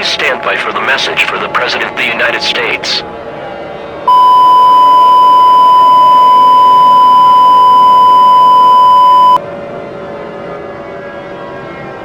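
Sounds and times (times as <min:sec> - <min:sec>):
loud electronic alert beep: 0:04.1 - 0:09.4.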